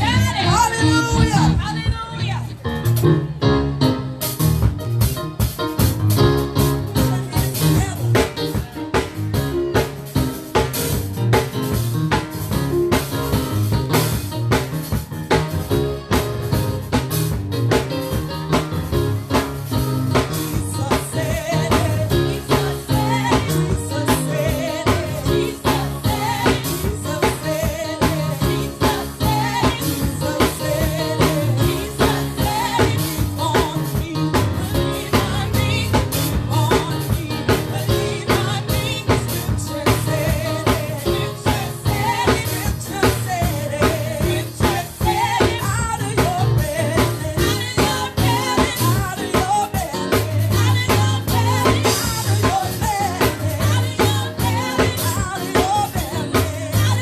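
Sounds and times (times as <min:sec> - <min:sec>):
voices singing: 0:00.0 - 0:02.2, 0:20.2 - 0:57.0
bass line: 0:00.0 - 0:57.0
drum kit steady beat: 0:00.0 - 0:57.0.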